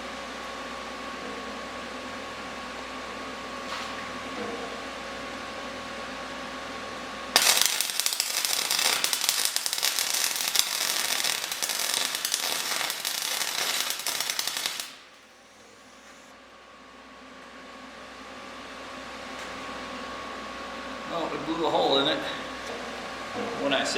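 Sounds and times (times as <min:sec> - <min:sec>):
electric arc welding crackle: 0:07.3 - 0:16.3.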